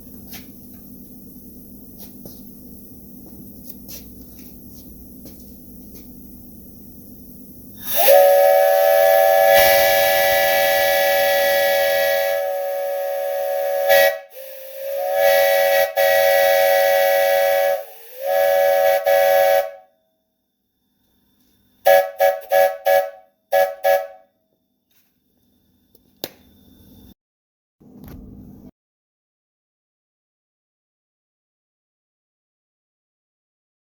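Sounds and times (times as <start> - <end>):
chime whistle blowing: 7.8 - 14.7.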